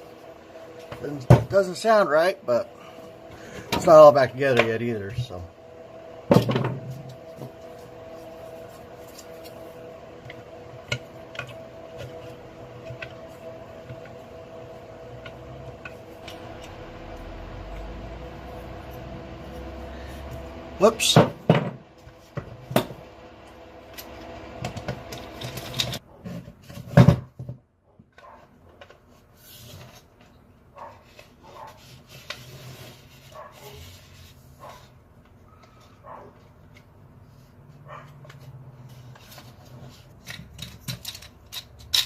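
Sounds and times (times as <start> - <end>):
orbital sander humming: 6.7 - 21.1
sander parts clicking and clattering: 40.2 - 42.0.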